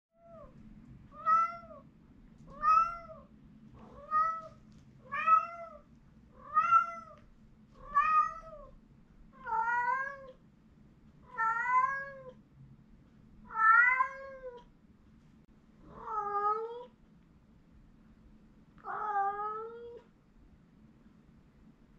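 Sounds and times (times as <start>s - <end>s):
cat meowing: 1.2s - 1.8s, 2.5s - 5.8s, 6.4s - 7.2s, 7.8s - 8.8s, 9.4s - 10.4s, 11.3s - 12.4s, 13.5s - 14.6s, 15.9s - 16.9s, 18.8s - 20.1s.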